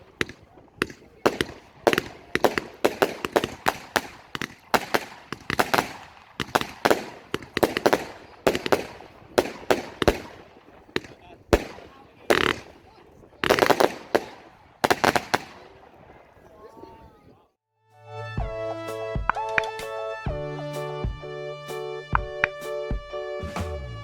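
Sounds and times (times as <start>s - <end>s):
fireworks cake firing: 0.0s - 17.1s.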